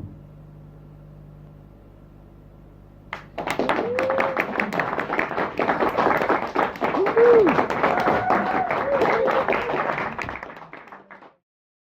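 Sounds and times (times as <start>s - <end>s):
audience applause: 3.1s - 11.4s
person whooping cheer: 3.5s - 4.9s, 6.8s - 10.2s.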